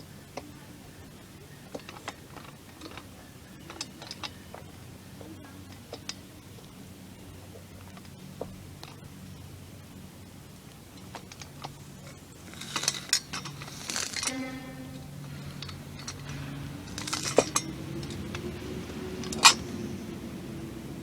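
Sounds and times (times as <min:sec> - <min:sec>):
metal parts clinking and knocking: 0:01.6 - 0:06.7, 0:11.0 - 0:20.1
short metallic ring: 0:13.8 - 0:17.7
sharp metal clank: 0:14.2 - 0:17.7.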